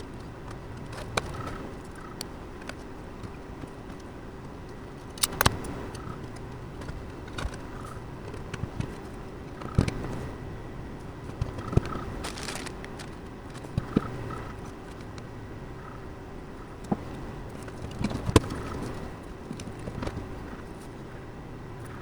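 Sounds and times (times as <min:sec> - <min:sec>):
brief rustle: 0:11.8 - 0:13.7.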